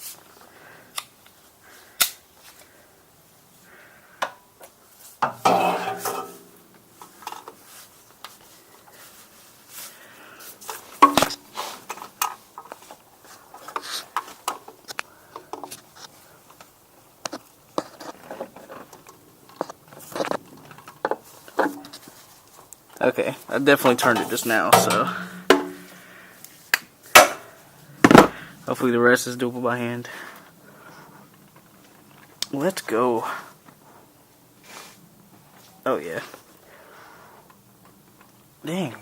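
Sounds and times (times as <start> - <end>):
metal tool scraping and knocking: 5.2 - 6.6, 23.9 - 26.0.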